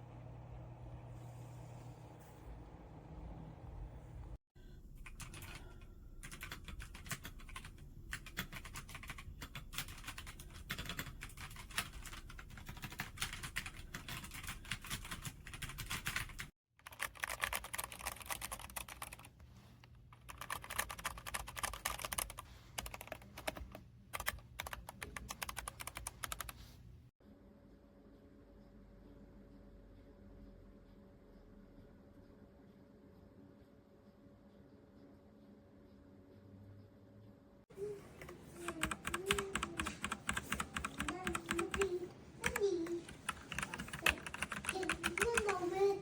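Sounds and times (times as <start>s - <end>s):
fast mechanical keyboard typing: 5.0s - 19.3s, 20.2s - 26.6s, 38.6s - 45.7s.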